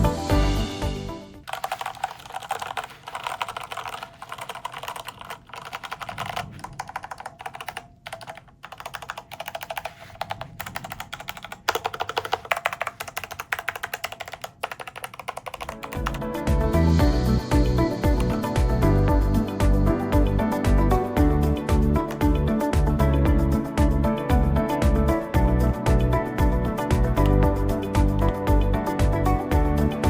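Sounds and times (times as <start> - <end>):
fast typing on mechanical keyboard: 1.4 - 16.2, 18.1 - 18.5, 22.0 - 22.3, 27.2 - 28.5.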